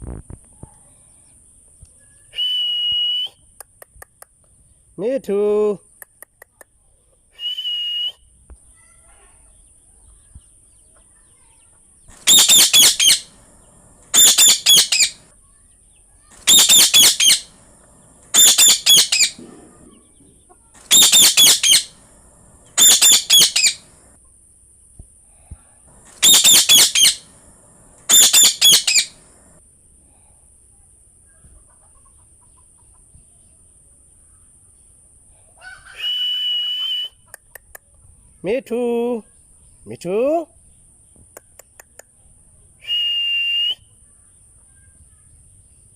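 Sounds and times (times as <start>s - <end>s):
parrot screeching: 12.2s - 13.4s, 14.1s - 15.2s, 16.3s - 17.6s, 18.3s - 19.4s, 20.8s - 22.0s, 22.7s - 24.0s, 26.1s - 27.3s, 28.0s - 29.4s.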